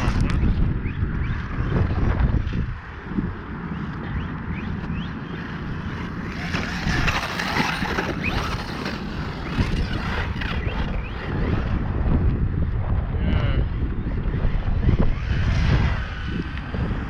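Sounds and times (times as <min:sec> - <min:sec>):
wind noise on microphone: 0:00.0 - 0:17.0
rc truck electric motor whining: 0:05.5 - 0:11.7.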